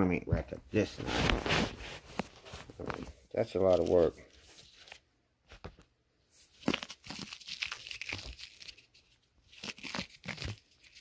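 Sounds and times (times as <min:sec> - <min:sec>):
paper wrap crinkling and tearing: 0:01.0 - 0:05.0, 0:06.6 - 0:11.0.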